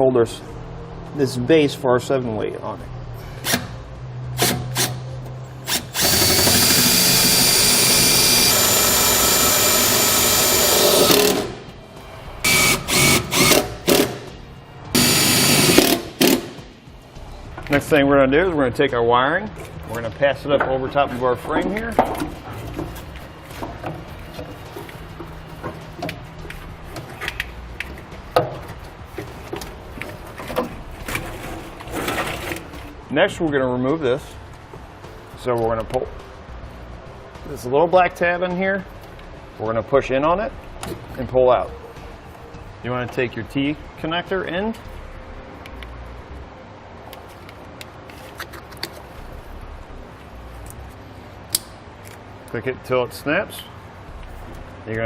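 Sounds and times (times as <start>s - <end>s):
power drill driving screws: 5.7s - 11.5s, 12.5s - 14.2s, 15.0s - 16.4s
wiring harness rubbing and knocking: 20.9s - 33.0s.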